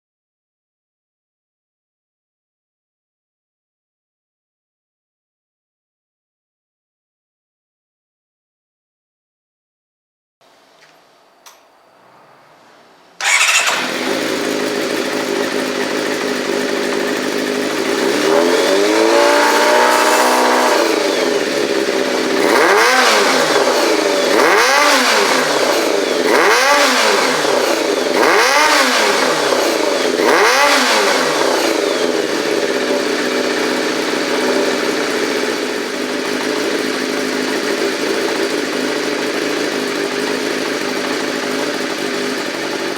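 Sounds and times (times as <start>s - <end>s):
motorcycle engine idling and revving: 13.2s - 42.9s.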